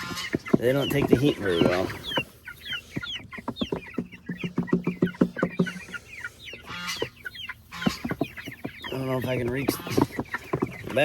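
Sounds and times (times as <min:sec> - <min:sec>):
chickens clucking: 0:00.0 - 0:11.0
chicks peeping: 0:00.0 - 0:11.0.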